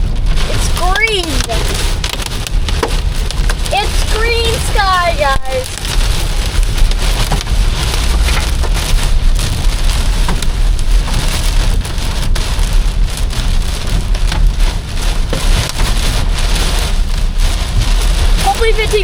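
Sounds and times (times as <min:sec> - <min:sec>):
car rumbling on road: 0:00.0 - 0:19.0
heavy rain on car roof: 0:00.0 - 0:19.0.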